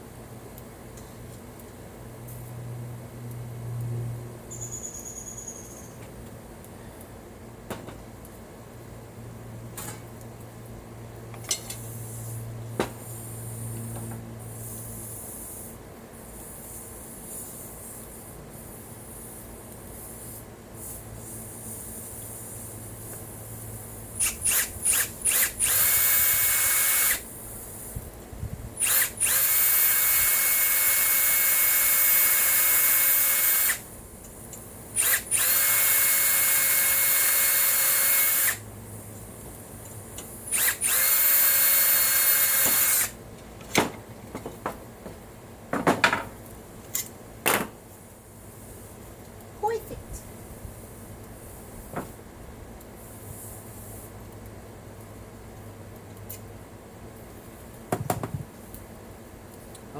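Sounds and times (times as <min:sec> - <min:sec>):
electric drill boring metal: 0:24.2 - 0:27.3, 0:28.8 - 0:33.8, 0:35.0 - 0:38.6, 0:40.5 - 0:43.2.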